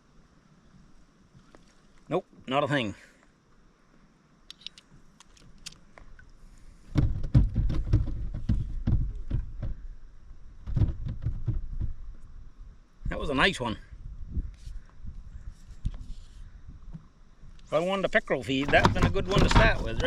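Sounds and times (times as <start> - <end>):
faint clicks: 4.5 - 6.4
dull knocks of gear on kayak: 6.9 - 9.8, 10.6 - 12.0, 18.6 - 20.0.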